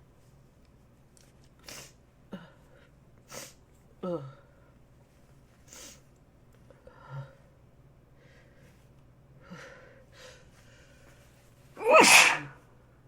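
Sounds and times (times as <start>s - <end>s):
person sneezing: 11.8s - 12.6s.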